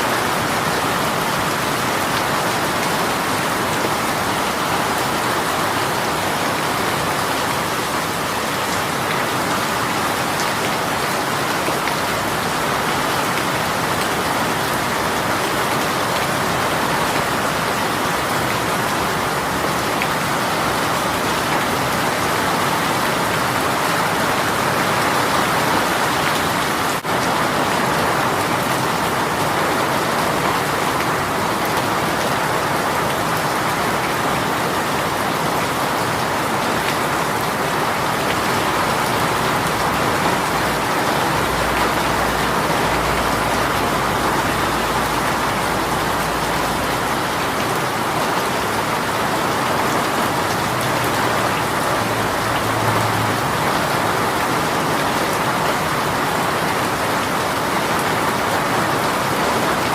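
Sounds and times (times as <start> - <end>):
rain falling: 0.0 - 59.9.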